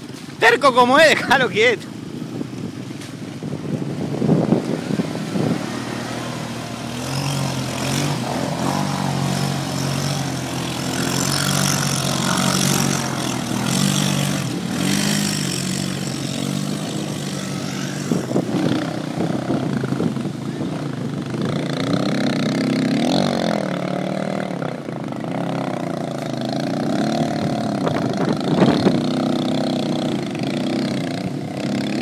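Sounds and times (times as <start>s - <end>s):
terrain noise: 0.0s - 22.2s
atv engine running: 0.0s - 32.0s
wind hiss: 1.5s - 20.7s.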